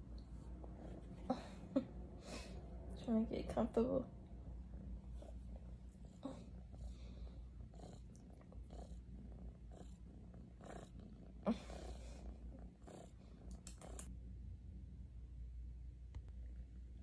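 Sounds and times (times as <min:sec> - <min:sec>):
cat purring: 0:04.0 - 0:14.1.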